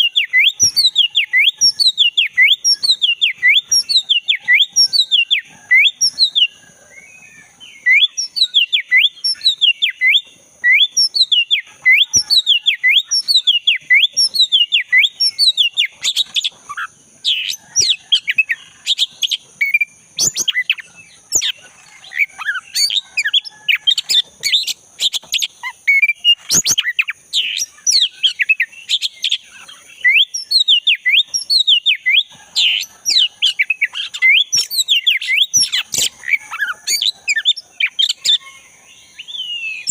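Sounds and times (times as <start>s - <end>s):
bird singing sharp whistles: 0.0s - 6.5s, 7.8s - 16.5s, 17.3s - 21.6s, 30.0s - 36.1s.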